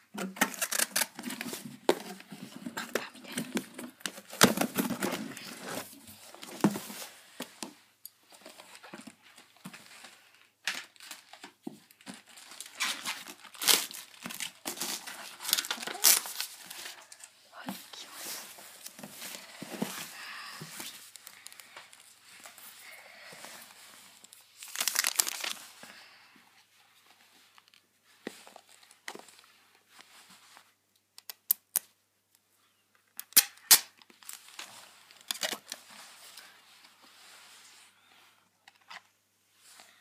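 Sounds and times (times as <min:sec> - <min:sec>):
plastic and paper crinkling: 0:00.2 - 0:26.1, 0:26.9 - 0:30.8, 0:33.9 - 0:37.8
packaging ripping: 0:00.4 - 0:01.2, 0:12.3 - 0:16.7, 0:24.6 - 0:25.6.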